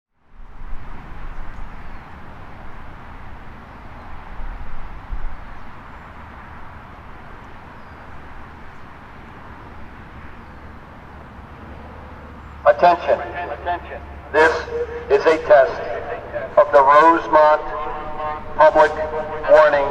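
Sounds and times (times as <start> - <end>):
distant traffic hum: 0.2 - 19.9.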